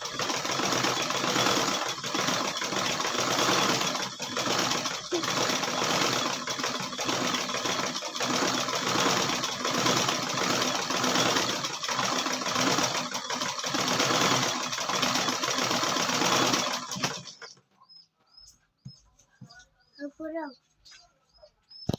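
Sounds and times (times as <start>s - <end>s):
sewing machine running: 0.0s - 17.6s.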